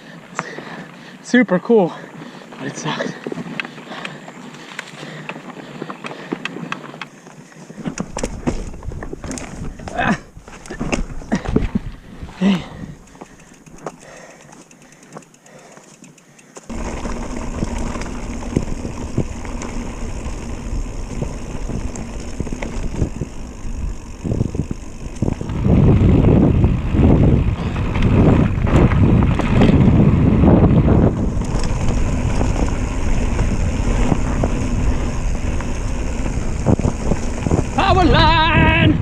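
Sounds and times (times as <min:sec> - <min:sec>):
bike tyre rumble: 0:00.0 - 0:39.0
bike rattling clicks: 0:02.2 - 0:38.9
wind buffeting microphone: 0:07.8 - 0:13.2, 0:16.7 - 0:39.0.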